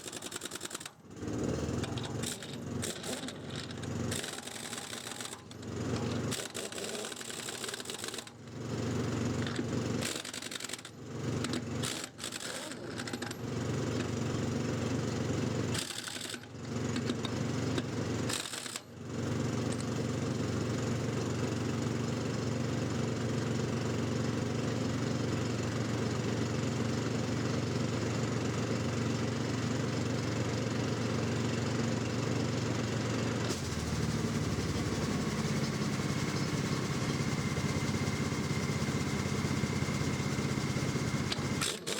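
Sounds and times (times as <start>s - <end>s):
pneumatic impact wrench running: 0.0s - 0.9s, 1.8s - 5.4s, 6.3s - 8.3s, 11.8s - 13.2s, 33.5s - 41.9s.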